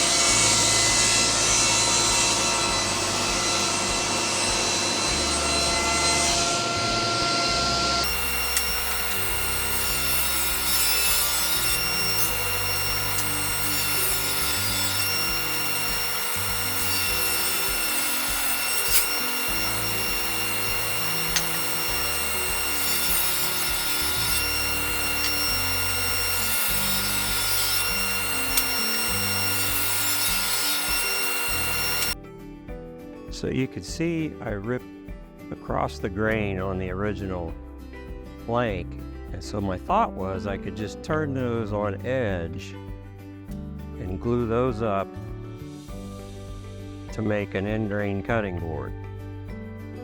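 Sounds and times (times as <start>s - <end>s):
table saw cutting wood: 0.0s - 32.2s
music playing: 0.0s - 50.0s.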